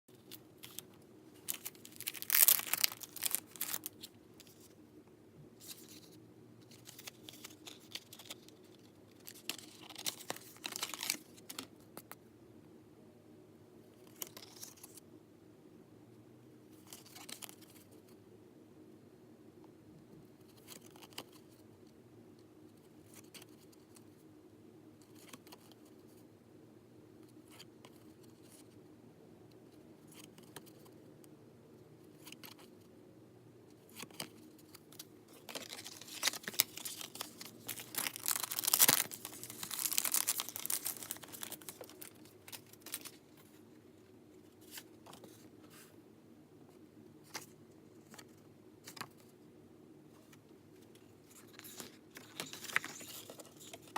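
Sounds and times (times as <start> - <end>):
packaging rustling and clicking: 1.4 - 4.0, 34.0 - 43.2
packaging tearing and crinkling: 1.4 - 4.0, 35.4 - 43.2.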